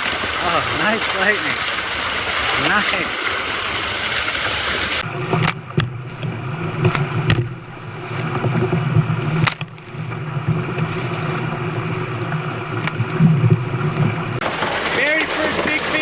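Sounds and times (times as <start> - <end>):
engine humming: 3.3 - 16.0
sharp clicks and knocks: 14.4 - 16.0.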